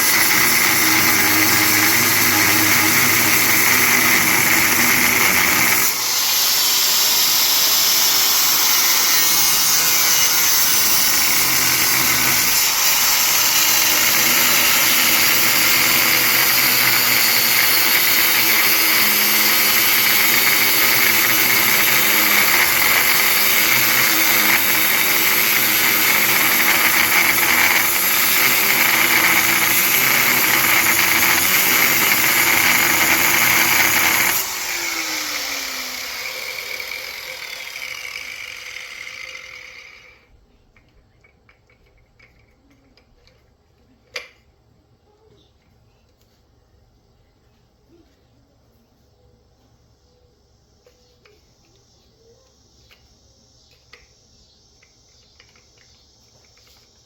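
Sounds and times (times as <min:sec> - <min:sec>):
angle grinder cutting metal: 0:00.0 - 0:40.2.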